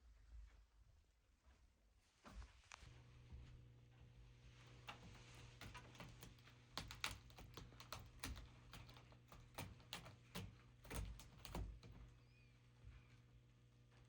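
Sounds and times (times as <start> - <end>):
faint low hum: 0.0 - 14.0
light sharp clicks and taps: 4.8 - 12.1.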